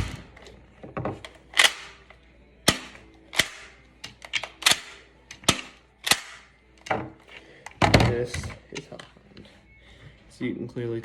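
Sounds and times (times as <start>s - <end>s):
toy pistol cracks: 1.5s - 6.5s.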